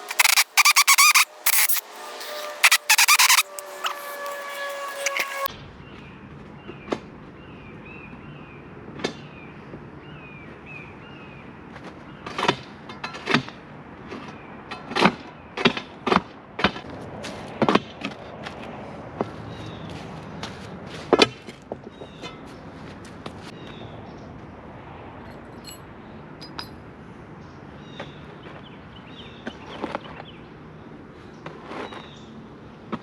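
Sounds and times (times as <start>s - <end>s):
bird chirping: 0.0s - 5.5s.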